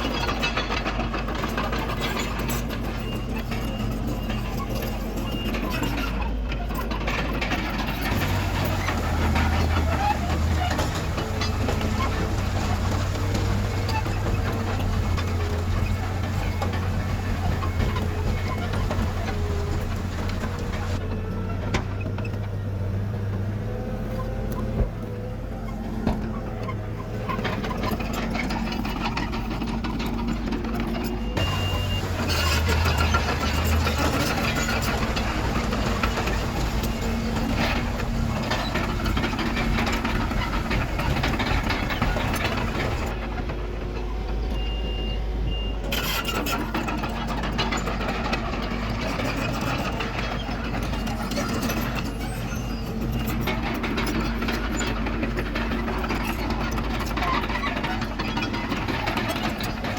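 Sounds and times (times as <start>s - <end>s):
diesel earthmoving machinery engine: 0.0s - 59.9s
short reversing beeps: 31.4s - 32.5s.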